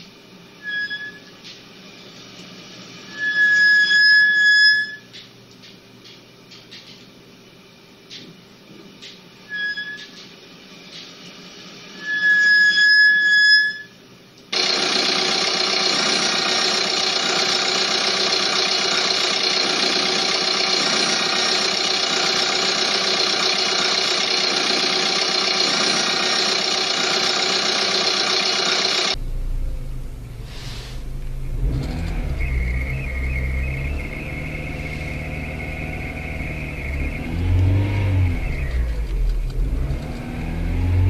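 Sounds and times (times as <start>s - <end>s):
short high squeal: 0.6s - 1.4s, 3.0s - 5.1s, 9.4s - 10.2s, 11.9s - 14.0s, 31.9s - 39.0s
mechanical whine: 8.6s - 41.0s
rough engine running: 14.6s - 41.0s
dense rumble: 29.2s - 37.1s.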